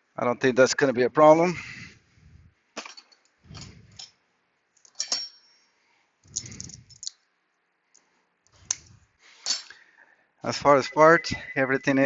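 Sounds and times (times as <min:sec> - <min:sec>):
metal tools clinking: 0:04.8 - 0:05.7, 0:09.4 - 0:09.8.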